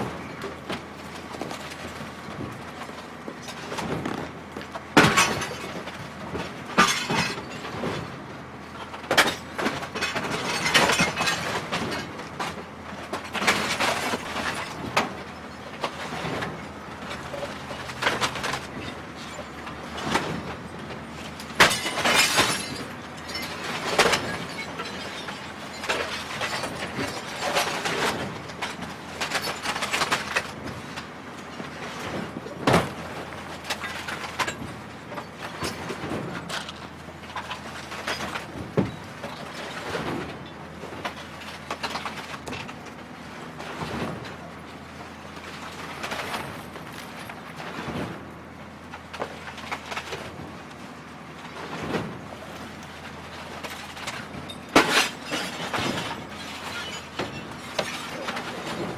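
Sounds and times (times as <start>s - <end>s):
glass breaking and crunching: 4.9s - 8.1s, 8.7s - 31.8s, 32.7s - 42.8s, 53.6s - 58.8s.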